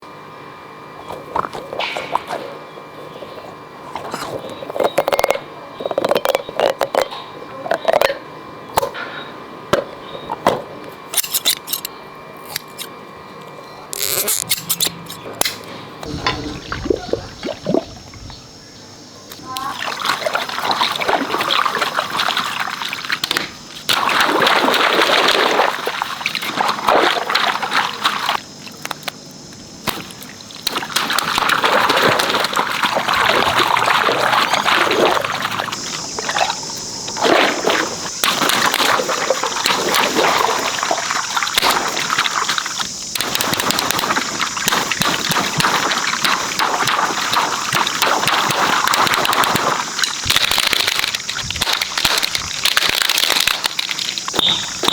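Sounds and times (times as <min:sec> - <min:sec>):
water pouring and sloshing: 0:16.0 - 0:18.5, 0:19.4 - 0:28.8, 0:29.8 - 0:54.9.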